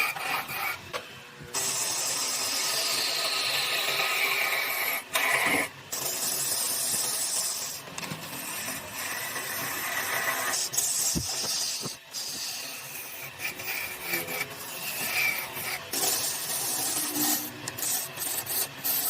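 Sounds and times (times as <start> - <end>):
tool scraping wood: 0.0 - 0.8, 1.6 - 19.0.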